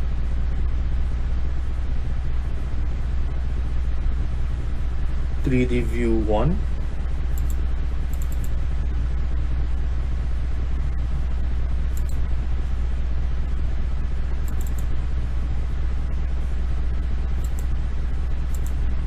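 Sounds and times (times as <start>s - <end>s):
low background hum: 0.0s - 19.0s
faint short clicks: 7.4s - 8.6s, 11.9s - 12.2s, 14.5s - 14.9s, 17.4s - 17.7s, 18.5s - 18.8s.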